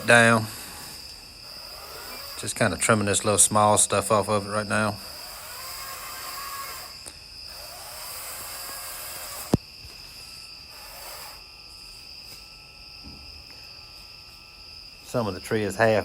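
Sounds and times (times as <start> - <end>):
cordless chainsaw motor whining: 0.0 - 11.5
insects chirping: 0.0 - 16.0.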